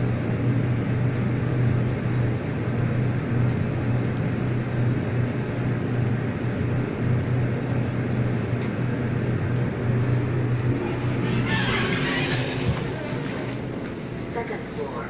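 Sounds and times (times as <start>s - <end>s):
elevator pump motor humming: 9.0s - 14.7s.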